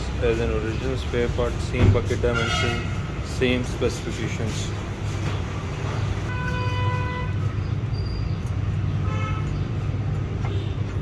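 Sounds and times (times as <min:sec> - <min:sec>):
vehicle horn toots: 0:02.3 - 0:03.0, 0:06.3 - 0:07.5, 0:09.0 - 0:09.5.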